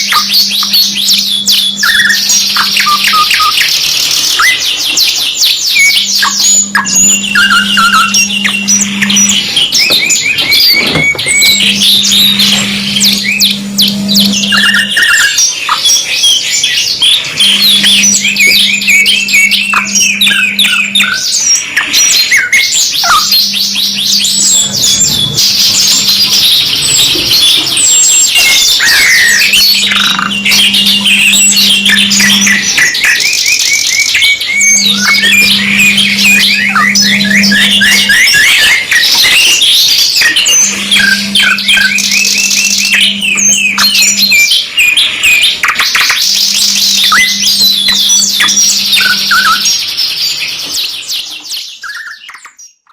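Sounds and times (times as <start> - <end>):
canaries singing: 0.0 - 52.9
low steady hum: 6.2 - 15.8, 16.9 - 22.0, 22.9 - 33.2, 34.3 - 45.2.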